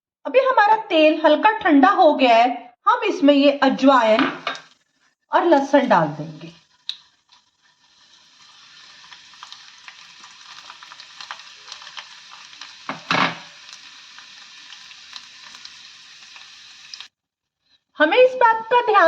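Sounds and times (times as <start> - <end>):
seeds and garlic sizzling in oil: 4.0 - 4.8, 5.4 - 17.1.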